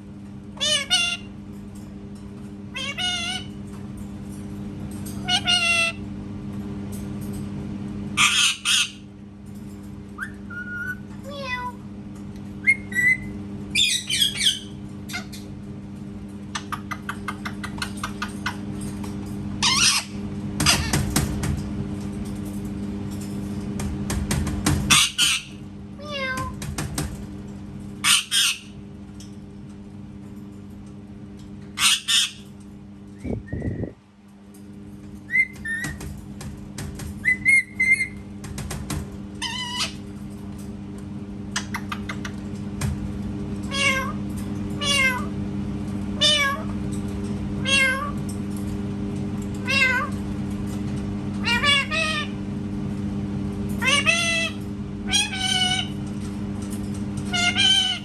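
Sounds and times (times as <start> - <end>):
parrot imitating cat meows: 2.7 - 3.5, 11.3 - 11.8, 26.0 - 26.5, 43.7 - 44.2, 44.8 - 45.3, 46.2 - 46.7, 47.6 - 48.2, 49.6 - 50.1
parrot squawks: 2.8 - 3.5, 28.0 - 28.8, 31.8 - 32.4, 51.4 - 52.4.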